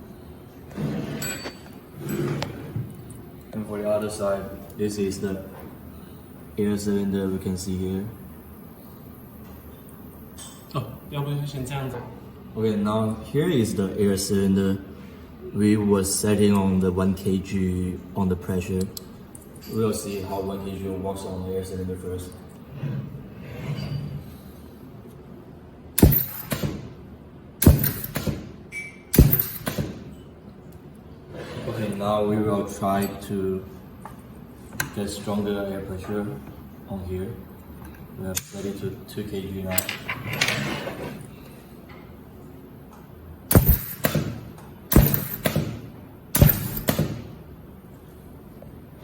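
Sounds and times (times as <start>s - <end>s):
welding head clack and rattle: 26.0s - 27.0s, 27.6s - 30.1s, 43.5s - 47.3s.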